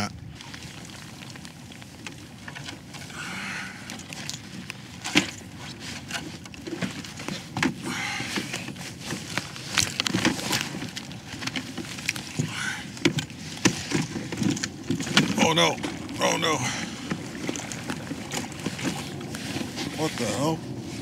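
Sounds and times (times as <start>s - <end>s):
knocks taps and rustling: 4.2s - 16.0s.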